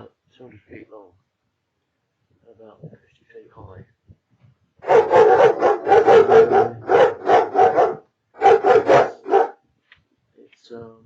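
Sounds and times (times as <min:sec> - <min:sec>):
dog barking: 0:04.8 - 0:09.6.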